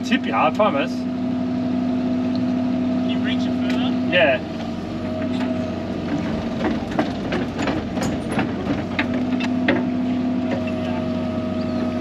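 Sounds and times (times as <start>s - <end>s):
excavator diesel engine running: 0.0s - 12.0s
sharp knocks and clanks: 5.2s - 10.9s.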